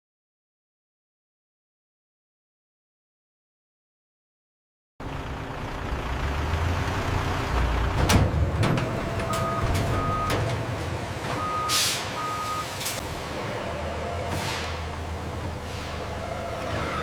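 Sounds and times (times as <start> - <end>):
low engine rumble: 5.0 - 17.0
truck reversing alarm beeps: 8.8 - 10.4, 11.3 - 12.8.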